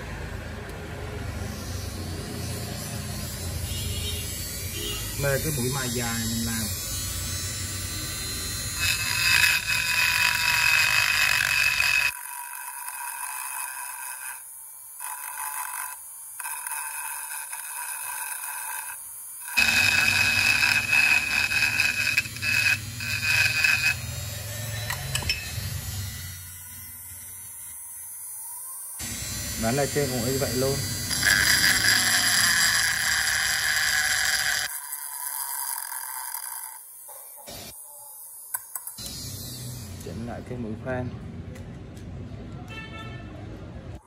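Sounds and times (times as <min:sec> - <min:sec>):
rotary grinder whining on metal: 0:01.1 - 0:40.9.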